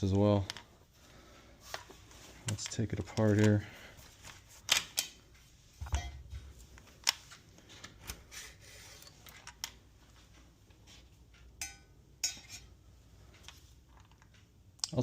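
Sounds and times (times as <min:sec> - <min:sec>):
rifle parts clicking and clacking: 0:01.7 - 0:03.6, 0:04.2 - 0:06.1.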